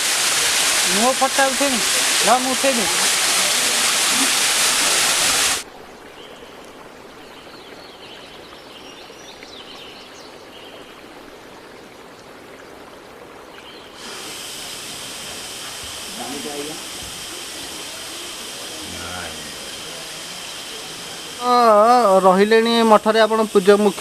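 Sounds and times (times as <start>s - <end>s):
waterfall rushing: 0.0s - 5.7s, 14.0s - 24.0s.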